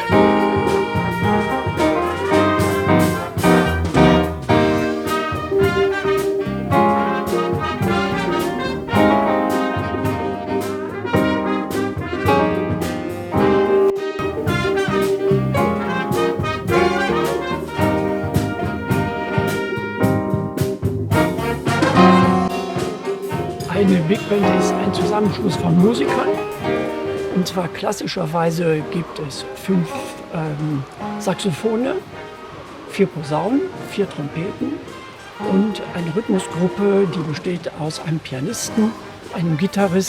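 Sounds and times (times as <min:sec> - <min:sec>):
drums and rhythm section: 0:00.0 - 0:27.4
horn section playing chords: 0:00.0 - 0:28.0, 0:38.7 - 0:40.0.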